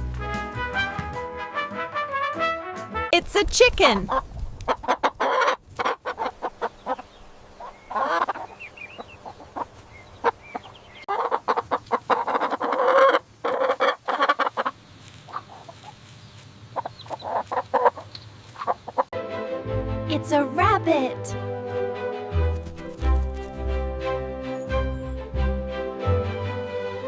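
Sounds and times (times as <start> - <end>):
chicken clucking: 4.0 - 19.1.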